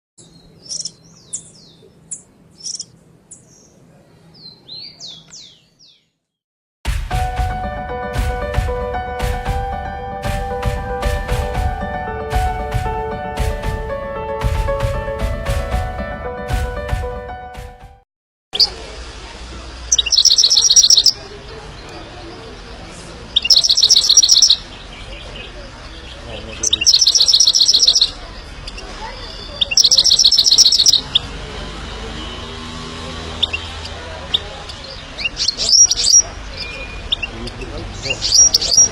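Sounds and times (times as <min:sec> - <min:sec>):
bird chirping: 0:00.2 - 0:06.2, 0:19.9 - 0:31.3, 0:33.3 - 0:38.9
bird whistling downward notes: 0:26.9 - 0:28.1, 0:29.7 - 0:31.1.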